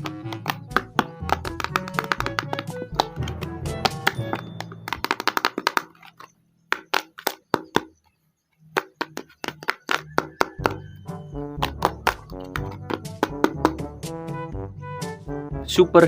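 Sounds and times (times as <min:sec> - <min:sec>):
music: 0:00.0 - 0:05.7, 0:09.9 - 0:16.0.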